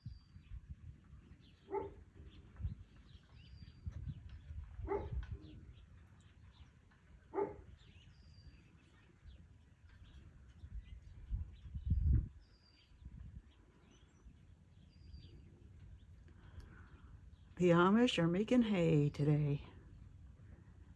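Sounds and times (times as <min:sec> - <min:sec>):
birds chirping: 0:01.2 - 0:19.6.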